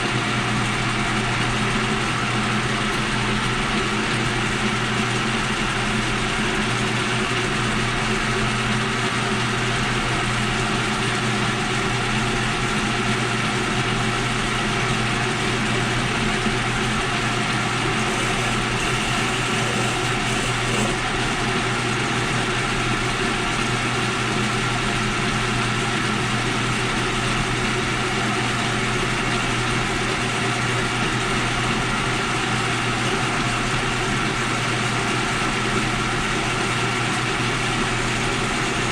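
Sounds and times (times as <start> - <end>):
electric motor humming: 13.6 - 23.2.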